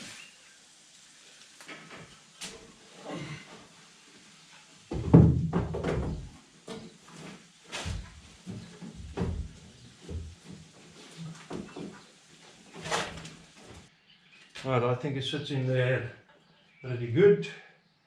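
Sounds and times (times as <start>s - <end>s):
toolbox thudding and knocking: 4.9s - 6.3s.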